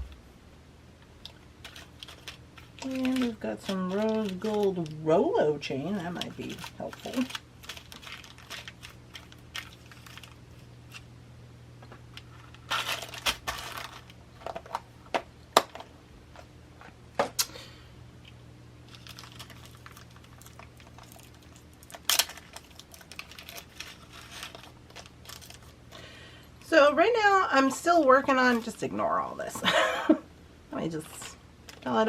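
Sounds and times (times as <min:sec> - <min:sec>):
packaging rustling: 0:01.2 - 0:05.1, 0:05.7 - 0:11.0, 0:11.9 - 0:15.0, 0:18.9 - 0:26.1.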